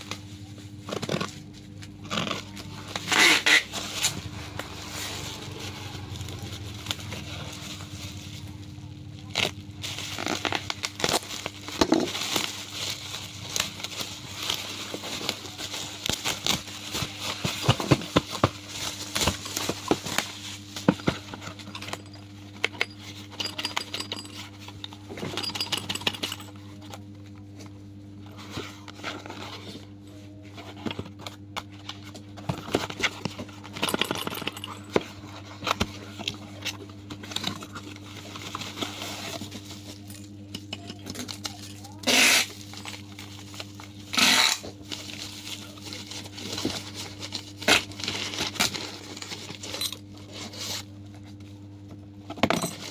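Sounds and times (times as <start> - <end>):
low electrical hum: 0.0 - 52.9
packaging crinkling: 0.8 - 22.1.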